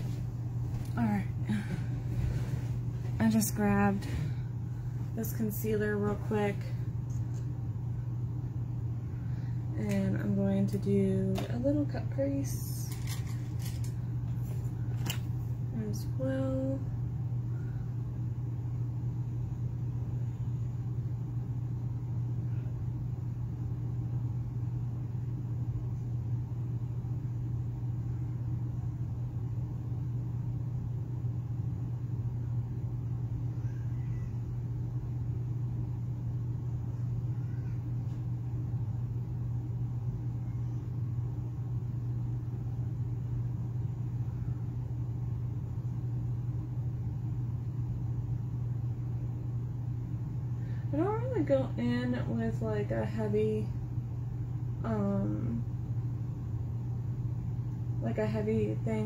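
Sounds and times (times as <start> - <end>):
low background hum: 0.0 - 59.0.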